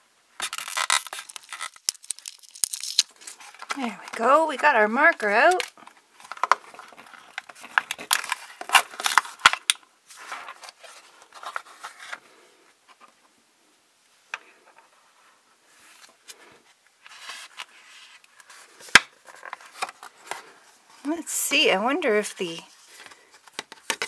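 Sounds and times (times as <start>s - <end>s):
packaging crinkling and rustling: 0.4s - 4.4s, 5.4s - 12.3s, 17.1s - 20.6s.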